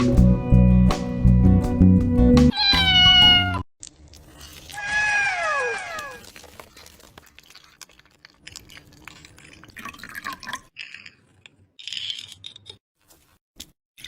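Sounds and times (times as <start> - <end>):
liquid dripping and splashing: 3.8 - 10.8.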